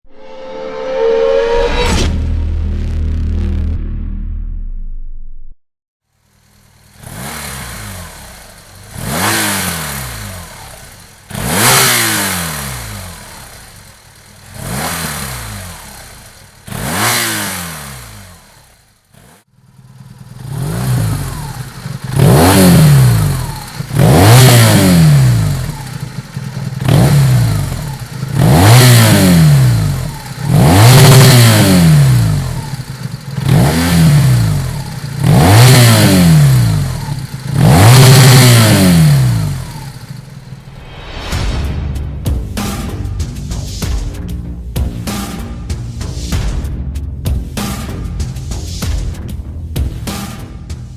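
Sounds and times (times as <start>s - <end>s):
motorcycle engine revving: 6.2s - 41.3s.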